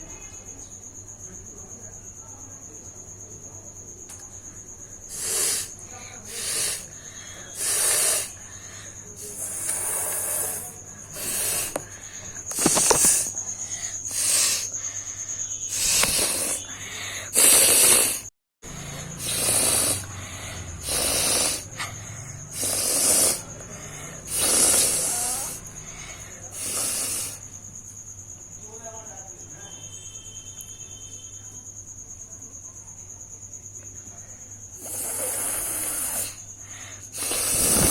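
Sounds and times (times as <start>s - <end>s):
person blowing hard through nose: 5.1s - 6.9s, 7.5s - 8.4s, 9.2s - 14.7s, 15.7s - 18.3s, 19.2s - 21.9s, 22.5s - 23.4s, 24.3s - 25.6s, 26.6s - 27.4s, 37.1s - 37.9s.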